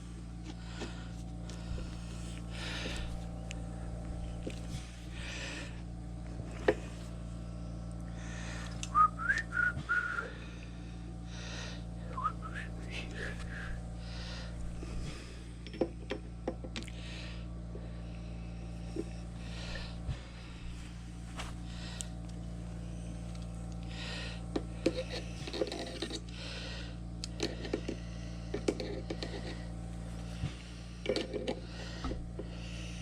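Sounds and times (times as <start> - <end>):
steady low hum: 0.0 - 33.0
person whistling: 8.9 - 10.3, 12.1 - 12.7.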